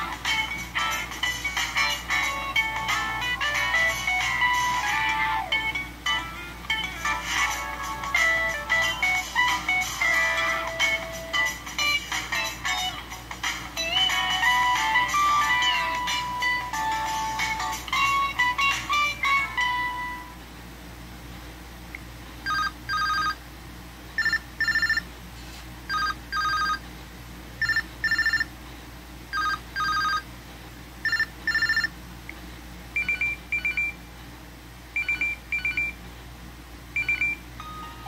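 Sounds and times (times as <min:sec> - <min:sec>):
phone ringtone: 0:00.0 - 0:13.1, 0:13.8 - 0:20.3, 0:22.5 - 0:23.4, 0:24.2 - 0:25.1, 0:25.9 - 0:26.8, 0:27.6 - 0:28.5, 0:29.3 - 0:30.2, 0:31.0 - 0:31.9, 0:33.0 - 0:34.0, 0:35.0 - 0:36.0, 0:37.0 - 0:38.0.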